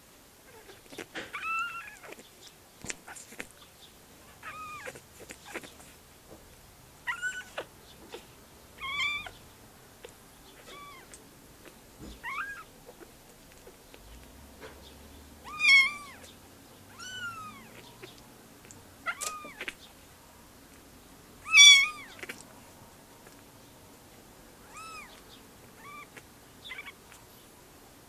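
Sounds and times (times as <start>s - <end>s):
kitten mewing: 0.5s - 2.2s, 4.4s - 5.8s, 7.1s - 9.4s, 10.6s - 11.2s, 12.2s - 12.7s, 15.4s - 16.3s, 16.9s - 18.2s, 19.0s - 19.8s, 21.4s - 22.4s, 24.6s - 25.2s, 25.8s - 27.2s.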